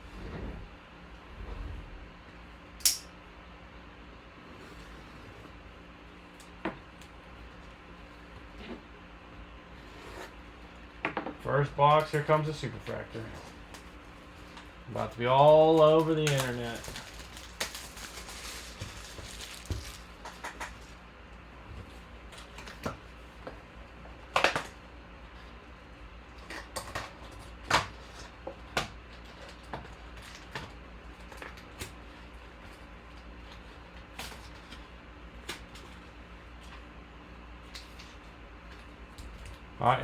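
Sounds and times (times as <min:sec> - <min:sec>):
cardboard and wrappers rustling: 0:12.0 - 0:21.0.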